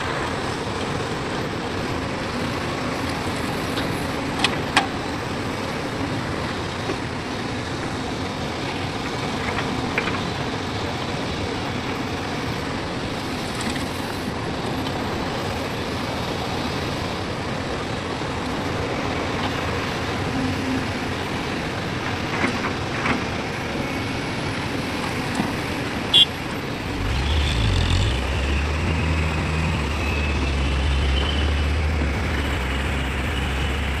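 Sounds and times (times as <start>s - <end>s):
diesel machinery running: 0.0s - 34.0s
deep engine with high whine: 26.1s - 34.0s.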